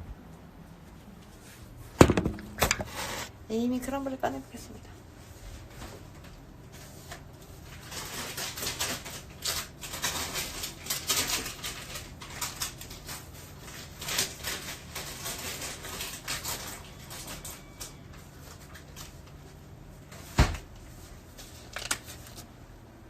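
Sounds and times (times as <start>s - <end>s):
packaging crinkling and rustling: 5.6s - 22.5s.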